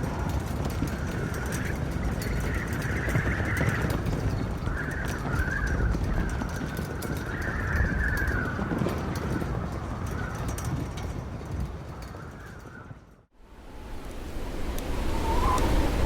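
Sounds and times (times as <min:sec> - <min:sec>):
wind howling: 0:13.4 - 0:16.0.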